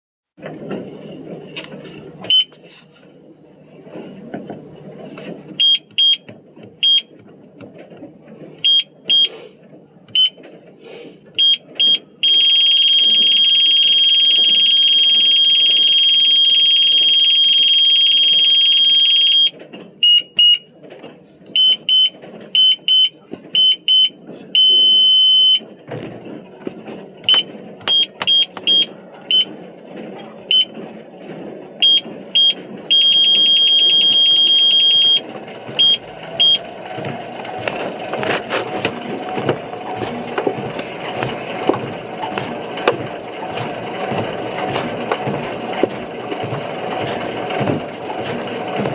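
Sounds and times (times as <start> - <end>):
electronic beeper beeping: 21.6 - 25.6, 31.8 - 35.2, 35.8 - 36.6.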